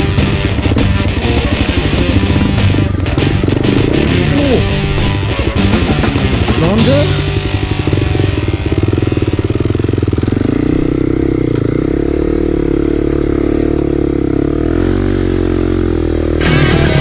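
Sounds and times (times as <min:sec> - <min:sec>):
music: 0:00.0 - 0:09.6, 0:16.3 - 0:17.0
motorcycle engine running: 0:00.0 - 0:17.0.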